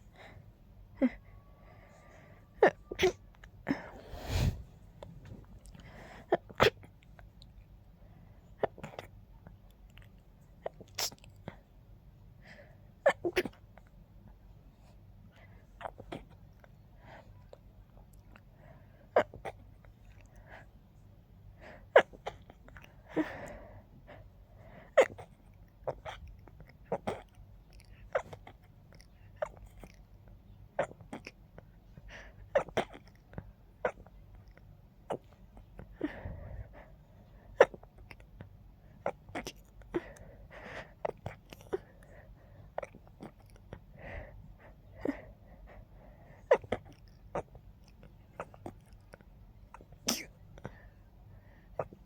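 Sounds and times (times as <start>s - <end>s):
hissing breaths: 3.8s - 4.8s
stifled sneezes: 49.8s - 50.8s.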